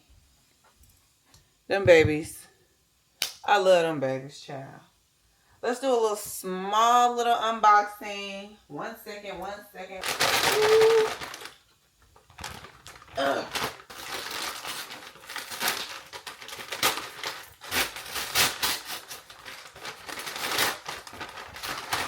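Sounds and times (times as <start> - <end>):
packaging crinkling and tearing: 10.0 - 22.0
person grunting: 13.2 - 13.6.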